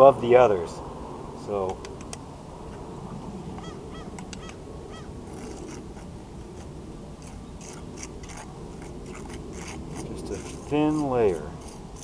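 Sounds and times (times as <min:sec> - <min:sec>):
tool scraping mortar on brick: 0:05.3 - 0:12.0.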